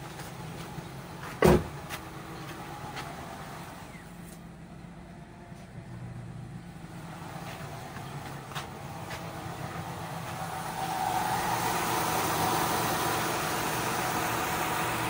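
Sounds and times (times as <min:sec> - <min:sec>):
car engine idling: 0:00.0 - 0:15.0
loud thump: 0:01.4 - 0:01.8.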